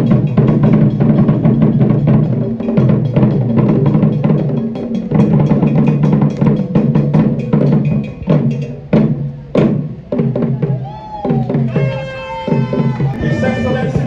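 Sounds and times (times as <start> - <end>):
fast drumming: 0.0 - 14.0
steady low tones: 13.0 - 14.0.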